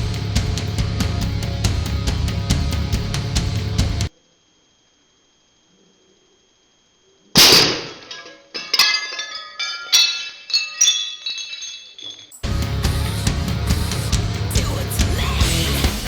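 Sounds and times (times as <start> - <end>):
sharp crack: 7.4 - 8.0
ringing clinks and clatters: 7.4 - 12.4.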